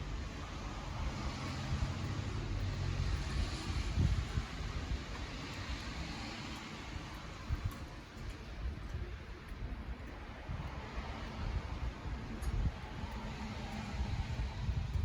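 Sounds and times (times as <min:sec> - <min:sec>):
campfire burning with a hiss: 0:00.0 - 0:15.0.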